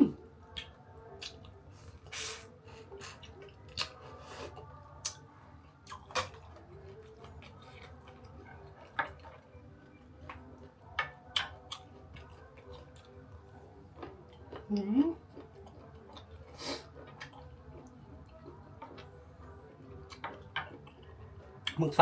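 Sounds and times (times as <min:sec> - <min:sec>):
food crunching: 0:02.9 - 0:21.8
wet chewing and squelching: 0:02.9 - 0:21.8.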